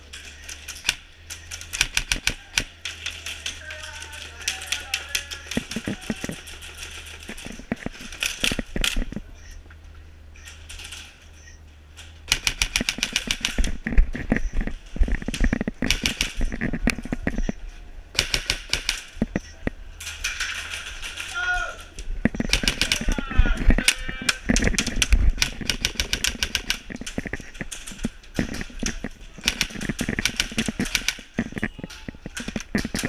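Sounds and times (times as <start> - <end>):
airsoft guns firing bursts: 0.2 - 9.0, 12.3 - 13.8, 15.4 - 16.7, 18.1 - 19.2, 22.4 - 31.6.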